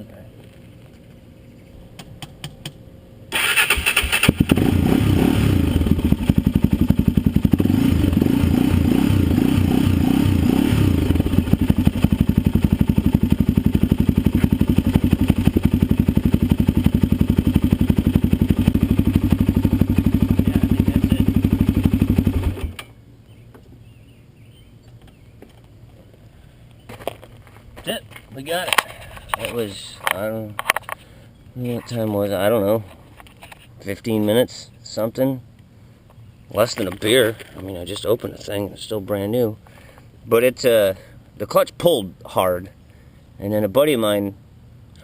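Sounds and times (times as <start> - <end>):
atv engine starting and idling: 3.3 - 22.9.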